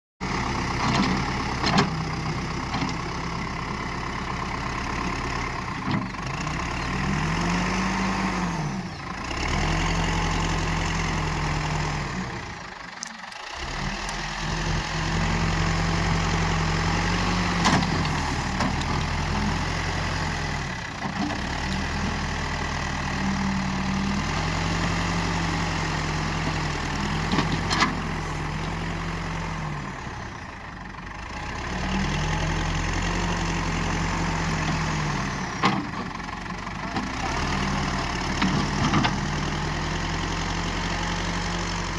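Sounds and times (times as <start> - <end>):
diesel engine revving: 0.2 - 41.9.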